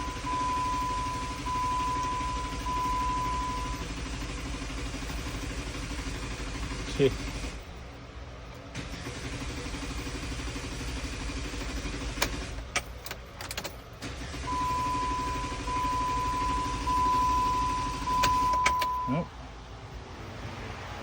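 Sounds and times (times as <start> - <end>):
high dashboard warning tone: 0.0 - 7.7, 14.3 - 19.3
engine cranking by starter: 0.0 - 19.2
ignition key clicks: 12.2 - 14.7, 17.8 - 19.1.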